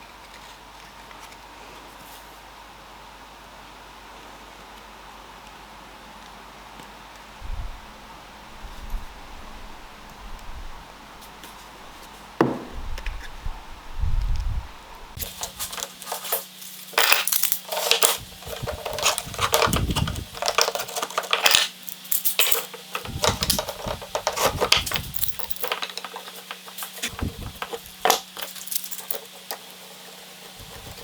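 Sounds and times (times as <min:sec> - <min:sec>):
steady low hum: 0:07.3 - 0:21.1, 0:21.8 - 0:31.0
small metal objects clinking: 0:15.2 - 0:29.9.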